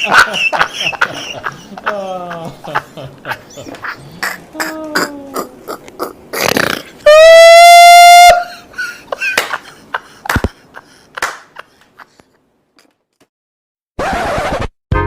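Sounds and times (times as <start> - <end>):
long pitched cartoon blast: 7.1 - 8.5.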